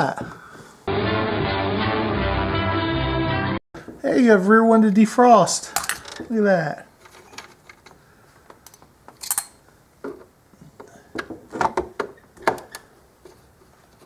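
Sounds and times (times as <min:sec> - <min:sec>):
plastic parts clicking and knocking: 0:05.7 - 0:06.3, 0:07.0 - 0:14.0.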